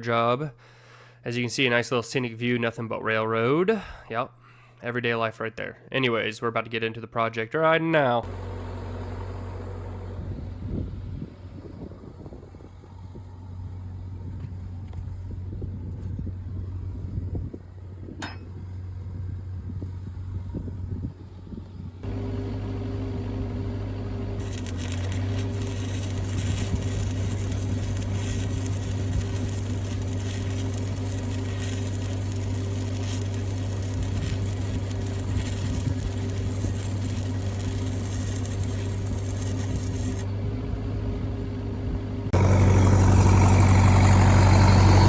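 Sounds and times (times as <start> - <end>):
engine droning: 8.2 - 45.0.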